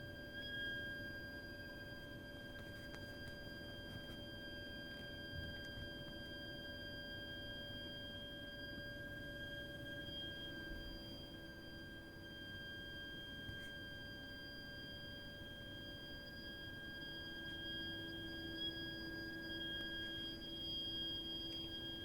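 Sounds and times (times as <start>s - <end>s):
shrill high-pitched whistle: 0.0s - 22.0s.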